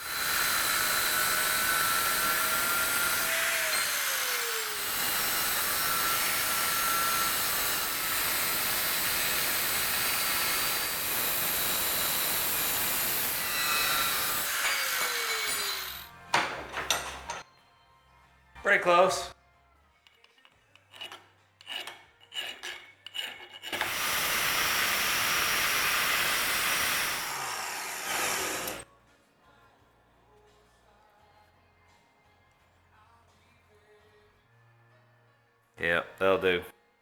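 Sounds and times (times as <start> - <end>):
power tool cutting steel: 0.0 - 17.4, 21.0 - 28.8.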